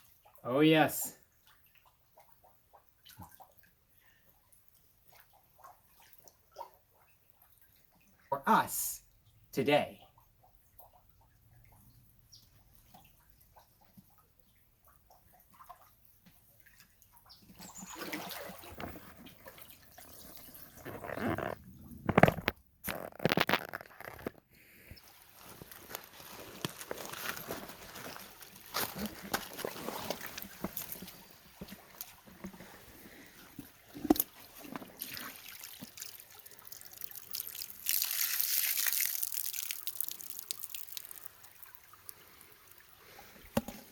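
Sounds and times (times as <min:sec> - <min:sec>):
water drips and trickles: 0:01.2 - 0:08.3, 0:09.0 - 0:20.9, 0:24.9 - 0:43.9
creek water splashing: 0:17.6 - 0:20.8, 0:25.0 - 0:43.9
rush of splashing water: 0:34.0 - 0:43.9.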